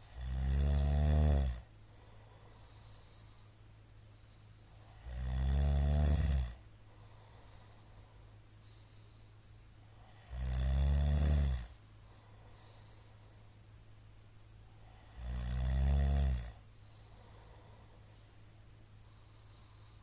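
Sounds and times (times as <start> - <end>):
man snoring loudly: 0.0 - 1.7, 4.8 - 6.6, 10.0 - 11.8, 15.0 - 16.6
soft breaths: 1.7 - 5.2, 6.6 - 10.4, 11.3 - 15.3, 16.6 - 20.0.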